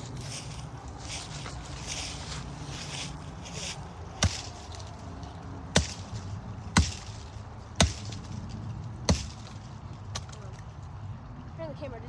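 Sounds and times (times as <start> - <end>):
machete chopping into tree trunk: 3.5 - 4.9, 5.8 - 8.5, 9.1 - 10.6.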